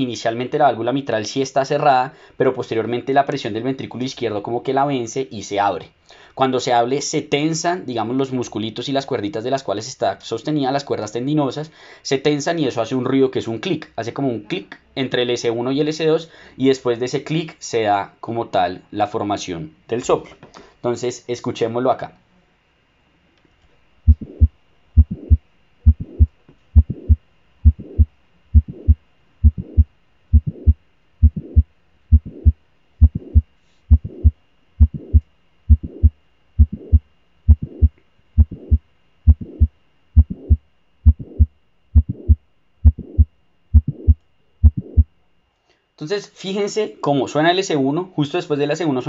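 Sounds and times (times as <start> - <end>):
blowing heart murmur: 24.1 - 45.1
heart valve click: 24.1 - 45.1
heartbeat: 24.1 - 45.1.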